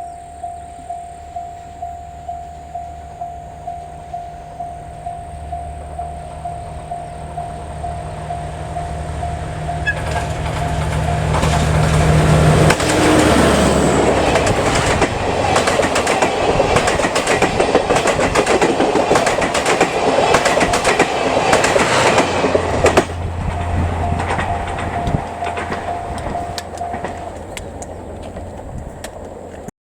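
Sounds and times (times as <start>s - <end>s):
level crossing alarm: 0.0s - 28.1s
diesel locomotive engine: 0.0s - 29.7s
train wheels clickety-clack: 7.8s - 29.7s.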